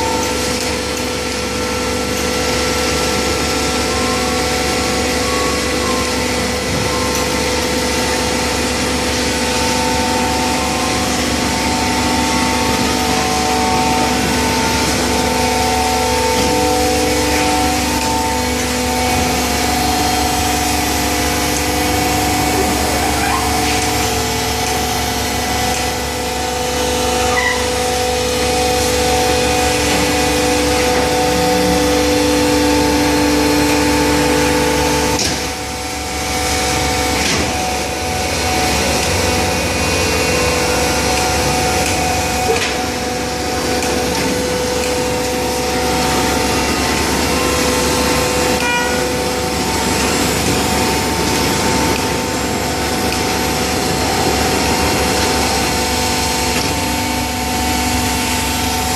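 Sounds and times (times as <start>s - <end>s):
hydraulic pump motor humming: 0.0s - 58.9s.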